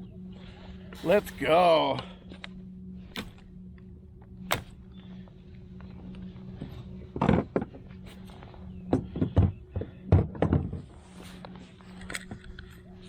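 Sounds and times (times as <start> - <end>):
steady low hum: 0.0 - 13.0
sharp clicks: 4.5 - 4.8.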